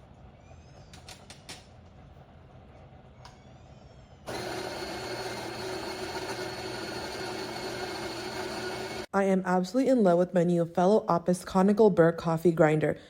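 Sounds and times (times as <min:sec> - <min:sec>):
coffee grinder grinding beans: 0:04.3 - 0:09.1.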